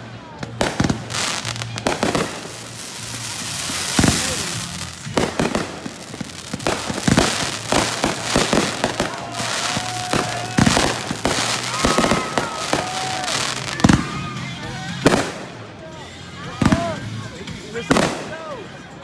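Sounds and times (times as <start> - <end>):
fireworks bangs and pops: 0.0 - 15.7, 16.6 - 17.2, 17.8 - 18.6
crackling hiss: 0.6 - 14.1.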